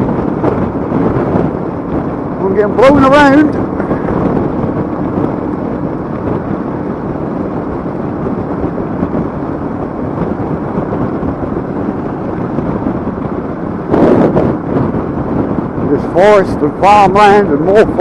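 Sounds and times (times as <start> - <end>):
motorcycle engine running: 0.0 - 18.0
wind on microphone: 0.0 - 18.0.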